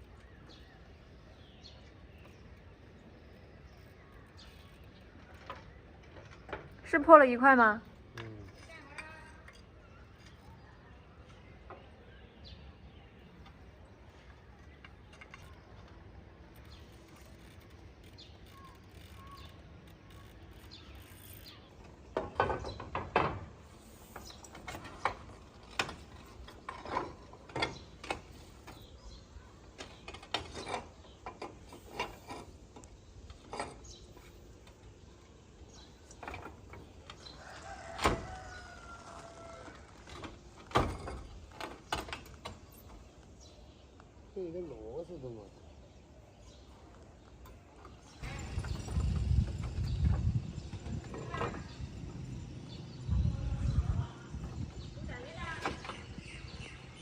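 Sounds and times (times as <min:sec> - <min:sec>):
faint background noise: 0:00.0 - 0:57.0.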